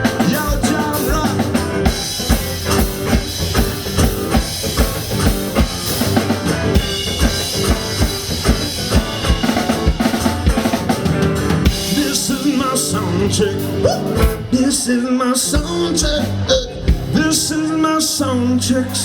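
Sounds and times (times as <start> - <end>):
instrumental beat with kick and snare: 0.0 - 12.2
sustained bass notes: 0.0 - 15.0.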